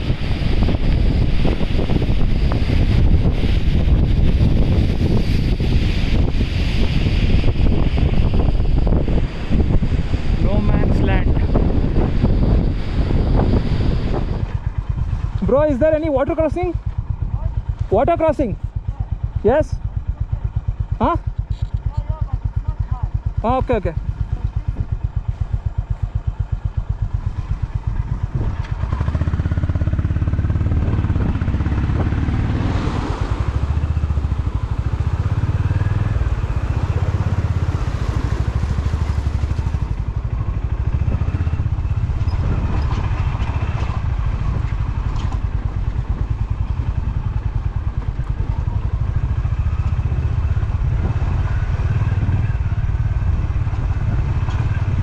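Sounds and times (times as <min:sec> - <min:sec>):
motorcycle engine pulling away: 0:24.2 - 0:55.0.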